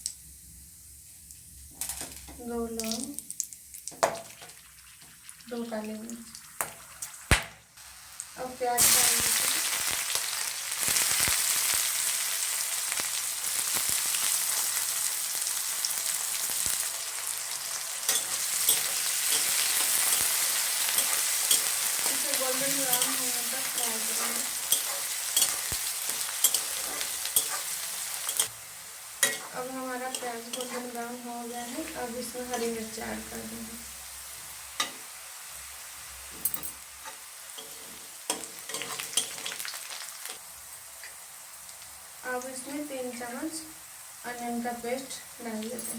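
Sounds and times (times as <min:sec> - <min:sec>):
onion sizzling in hot oil: 0:00.0 - 0:45.9
spatula scraping a pan: 0:18.1 - 0:28.5, 0:29.2 - 0:31.0, 0:37.0 - 0:40.4.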